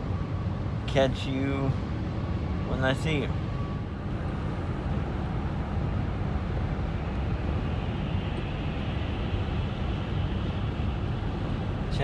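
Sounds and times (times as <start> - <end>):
car road and engine noise: 0.0 - 12.0.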